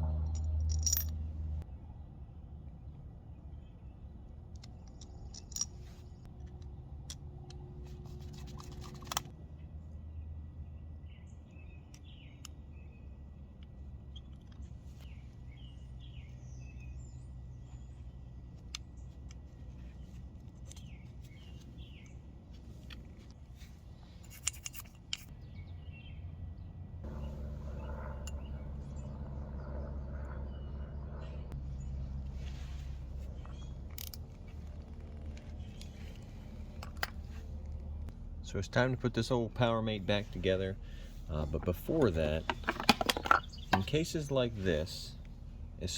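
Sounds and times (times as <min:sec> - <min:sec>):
low rumble: 0:00.0 - 0:02.5, 0:25.4 - 0:45.9
small birds chirping: 0:09.7 - 0:24.2, 0:25.3 - 0:37.6, 0:40.2 - 0:45.9
clicks of small parts handled: 0:24.2 - 0:25.3, 0:42.0 - 0:44.0.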